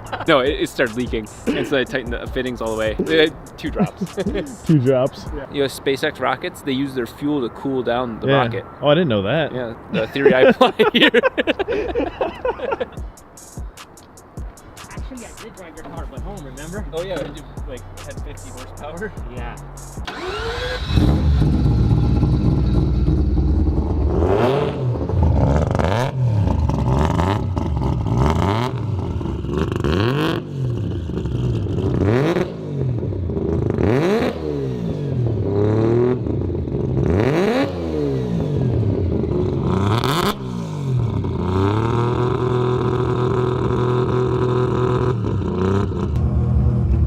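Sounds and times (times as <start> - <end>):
rotary engine revving: 19.7 - 47.0.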